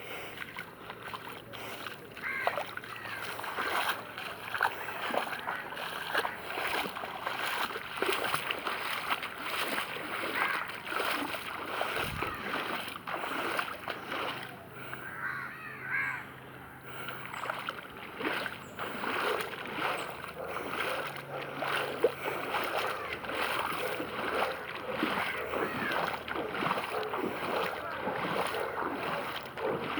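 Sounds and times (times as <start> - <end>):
wading through water splashing: 0.0 - 29.9.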